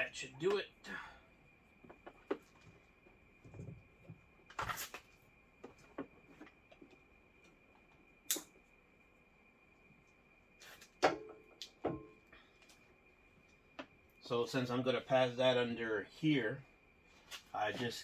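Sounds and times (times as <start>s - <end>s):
faint high whine: 0.0s - 18.0s
sharp click: 8.3s - 8.5s.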